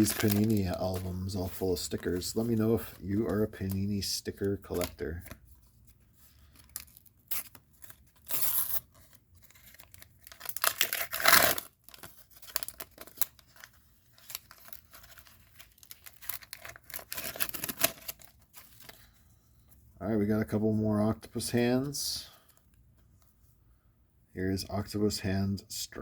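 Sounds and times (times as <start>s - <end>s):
wrapper tearing: 0.0s - 1.3s, 6.4s - 19.0s
wrapper rustling and crinkling: 0.0s - 19.2s.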